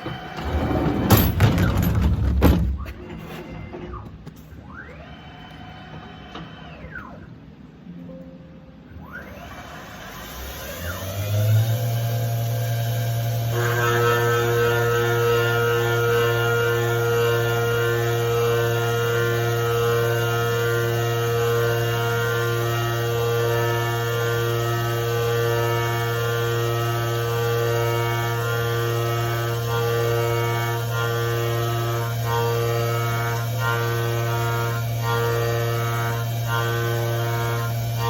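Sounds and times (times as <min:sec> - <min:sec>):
milling machine humming: 0:13.5 - 0:38.0.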